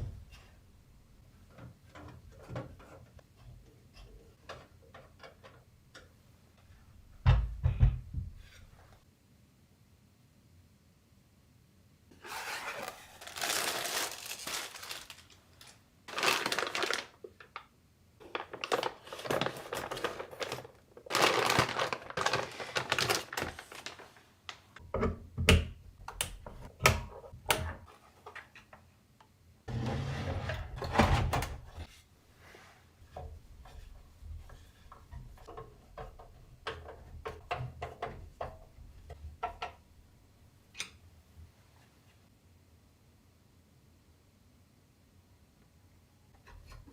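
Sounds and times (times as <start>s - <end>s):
packaging rustling: 12.2s - 17.6s, 18.2s - 24.8s.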